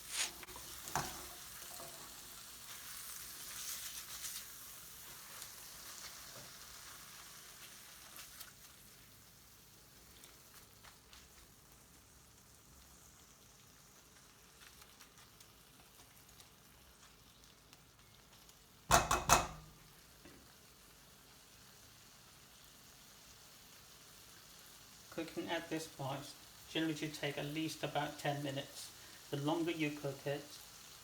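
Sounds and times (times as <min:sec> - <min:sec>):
masala sizzling in a pan: 0:00.0 - 0:31.0
sharp loud knocks: 0:18.9 - 0:19.6.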